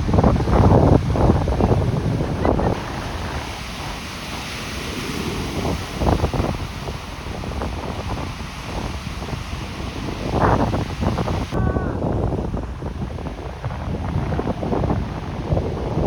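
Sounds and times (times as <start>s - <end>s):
ocean surf on a beach: 0.0s - 16.0s
wind buffeting microphone: 0.0s - 16.0s.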